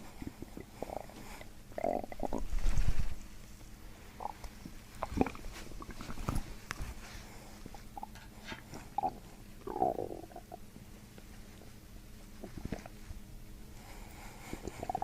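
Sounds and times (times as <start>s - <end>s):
stomach gurgling: 0.0s - 3.2s, 4.1s - 6.9s, 7.6s - 10.7s, 12.3s - 13.0s, 14.5s - 15.0s.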